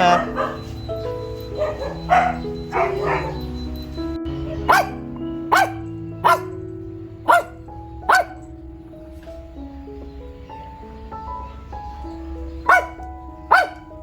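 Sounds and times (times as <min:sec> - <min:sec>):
dog barking: 0:00.0 - 0:06.6, 0:07.2 - 0:08.5, 0:12.2 - 0:14.0
background music: 0:00.0 - 0:14.0.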